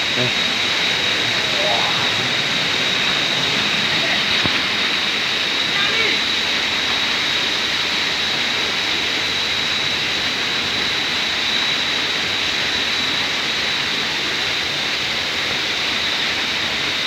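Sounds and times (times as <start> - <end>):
high-pitched whine: 0.0 - 7.8
waterfall rushing: 0.4 - 6.6.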